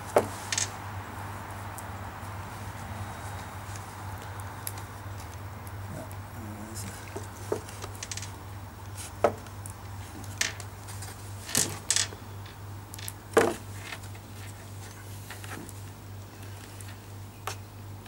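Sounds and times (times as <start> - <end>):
steady low hum: 0.0 - 18.0
clicks and knocks of parts: 7.1 - 8.4, 11.4 - 15.8.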